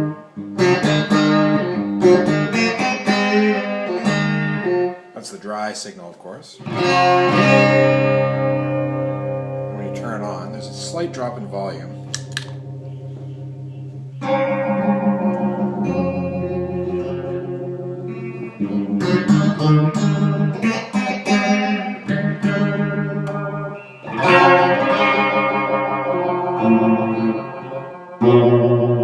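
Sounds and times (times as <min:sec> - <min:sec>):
electric guitar strumming with phaser: 0:00.0 - 0:05.2, 0:06.6 - 0:29.0.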